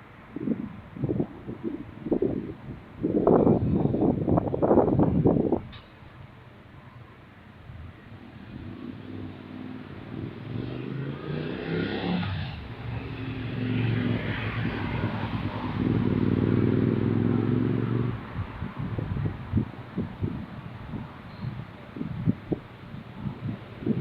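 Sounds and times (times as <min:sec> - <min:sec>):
vehicle engine accelerating past: 0:08.3 - 0:18.4.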